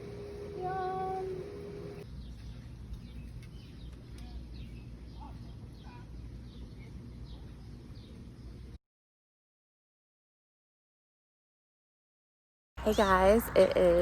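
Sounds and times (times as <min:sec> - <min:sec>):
small birds chirping: 0:00.0 - 0:08.8.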